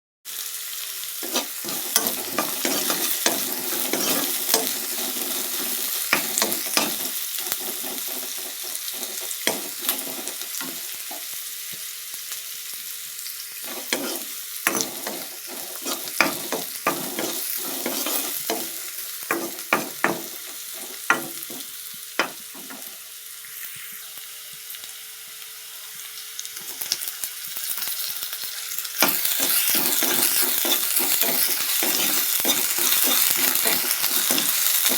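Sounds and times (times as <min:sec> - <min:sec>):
vegetable sizzling in hot oil: 0:00.3 - 0:34.9
spatula scraping a pan: 0:01.2 - 0:11.4, 0:13.6 - 0:23.0, 0:29.0 - 0:34.9.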